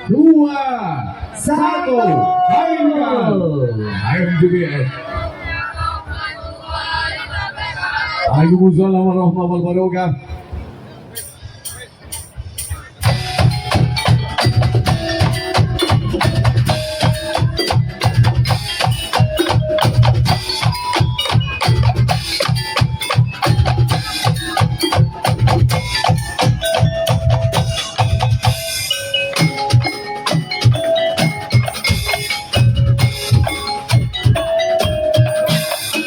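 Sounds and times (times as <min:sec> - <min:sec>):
heavy low drum beat: 0:11.6 - 0:28.7.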